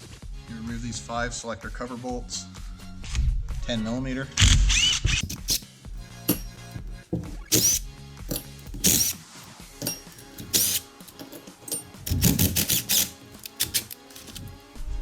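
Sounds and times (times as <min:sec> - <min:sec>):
power tool bursts on bolts: 0:04.5 - 0:14.6.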